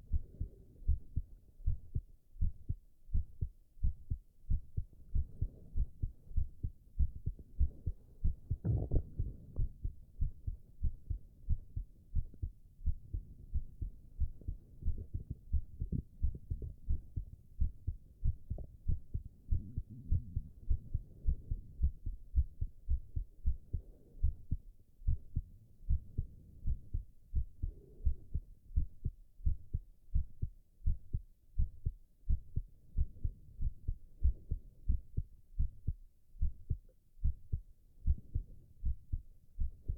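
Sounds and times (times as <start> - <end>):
heartbeat thumps: 0.0 - 39.9
stomach gurgling: 8.5 - 9.9.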